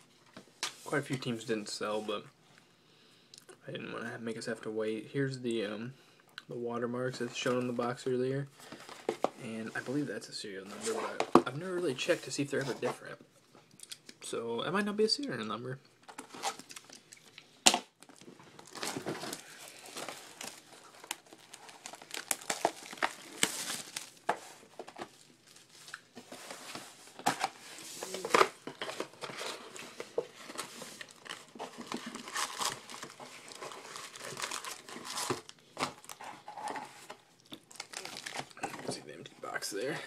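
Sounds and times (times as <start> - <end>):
card pack wrappers crinkling: 16.0 - 38.7.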